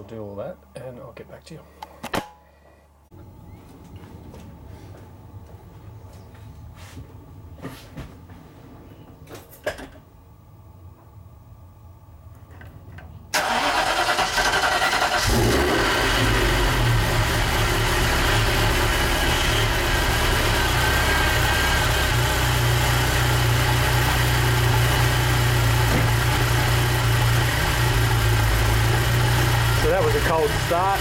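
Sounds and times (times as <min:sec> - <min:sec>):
car engine starting and idling: 0:13.3 - 0:31.0.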